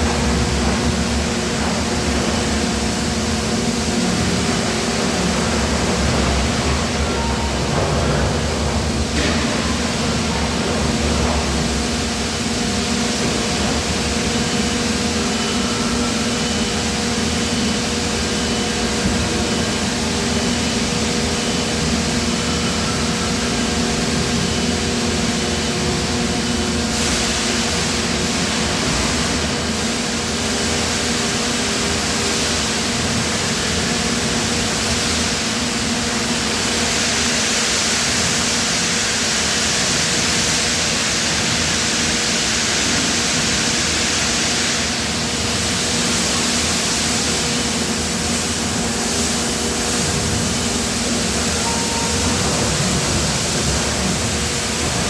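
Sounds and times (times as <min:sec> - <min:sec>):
industrial machine hum and hiss: 0:00.0 - 0:55.0
faint high beep: 0:51.6 - 0:52.7.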